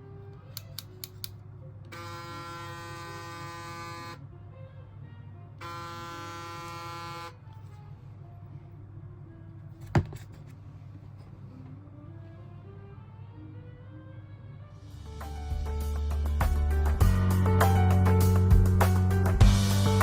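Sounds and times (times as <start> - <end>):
hair clipper buzzing: 1.9 - 4.2, 5.6 - 7.4.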